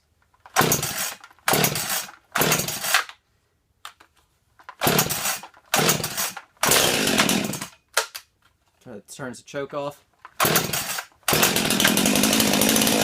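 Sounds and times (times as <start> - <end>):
chainsaw starter cord yanks: 0.4 - 3.1, 4.6 - 8.2, 10.2 - 13.0.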